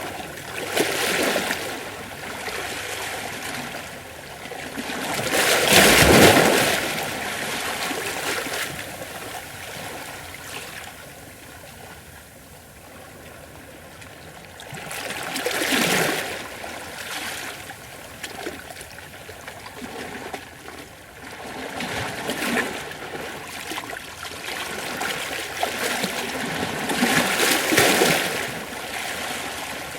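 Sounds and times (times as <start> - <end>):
ocean waves washing against rocks: 4.6 - 10.5, 24.7 - 29.9.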